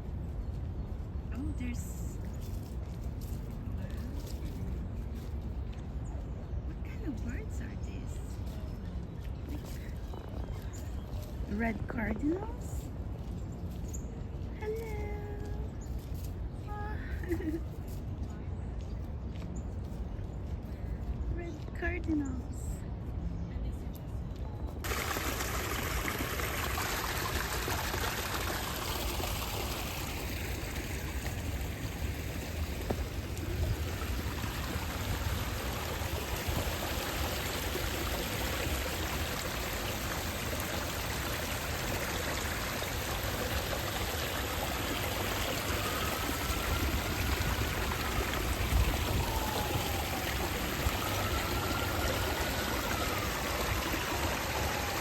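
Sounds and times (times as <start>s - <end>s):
stream water rushing: 24.8s - 55.0s.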